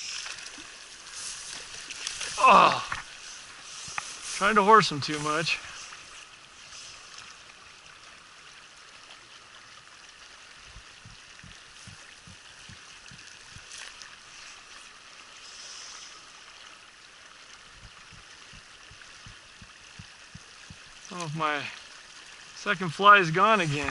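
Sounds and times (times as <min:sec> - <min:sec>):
river flowing over rocks: 0:00.0 - 0:23.9
soft low thumps: 0:10.7 - 0:13.7, 0:17.7 - 0:21.1.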